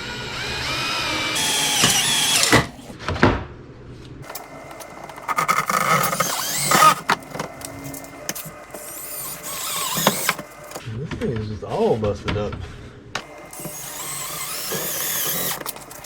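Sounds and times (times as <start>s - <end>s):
power drill driving screws: 0.0s - 3.0s, 4.3s - 7.2s, 7.9s - 10.8s, 13.2s - 16.0s.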